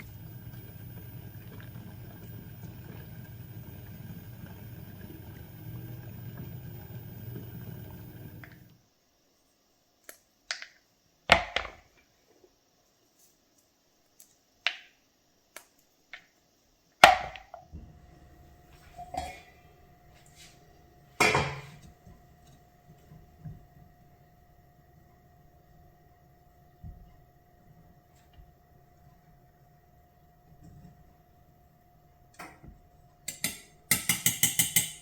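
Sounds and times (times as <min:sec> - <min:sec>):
faint steady ringing: 0:00.0 - 0:08.8, 0:17.8 - 0:35.0
kitchenware knocking and clinking: 0:21.2 - 0:21.8, 0:33.3 - 0:35.0.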